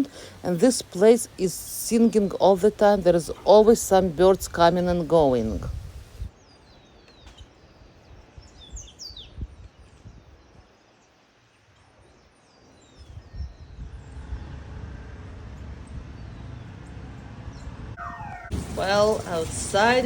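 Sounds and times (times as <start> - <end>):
birds chirping: 0.0 - 20.0
outdoor background noise: 0.0 - 20.0.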